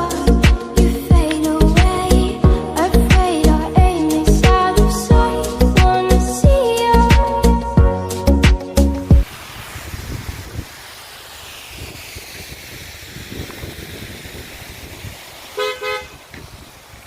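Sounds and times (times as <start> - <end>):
road traffic noise: 8.8 - 17.0
vehicle horn toots: 15.6 - 16.2.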